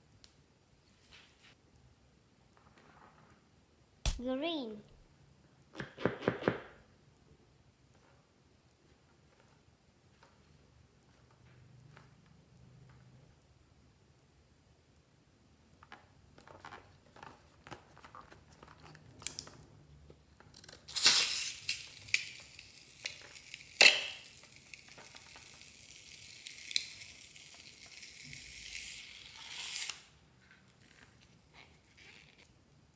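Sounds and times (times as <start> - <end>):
crackling crinkling handling noise: 15.8 - 19.6, 20.4 - 29.0
steady high hiss: 20.9 - 30.2.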